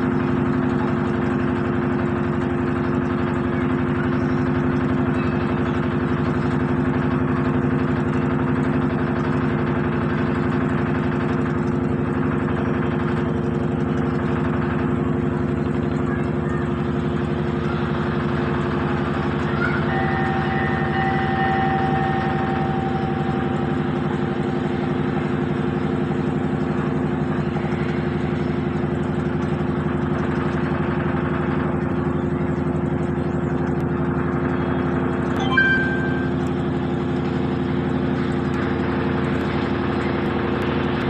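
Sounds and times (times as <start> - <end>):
washing machine motor hum: 0.0 - 41.0
short chirp: 35.4 - 36.7.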